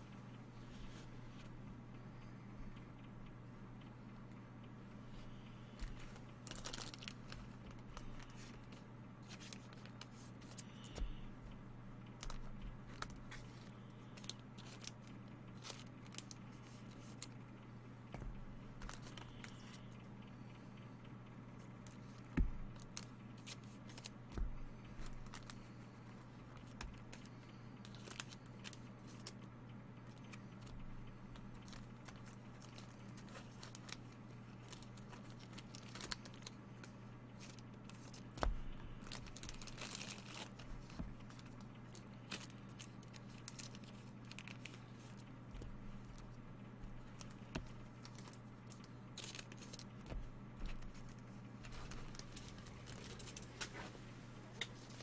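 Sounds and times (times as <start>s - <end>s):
steady low hum: 0.0s - 55.0s
card wrappers tearing and crinkling: 6.2s - 10.9s, 12.2s - 17.4s, 18.8s - 19.8s, 22.0s - 24.2s, 26.6s - 29.4s, 31.4s - 36.6s, 37.4s - 45.3s, 47.0s - 53.7s.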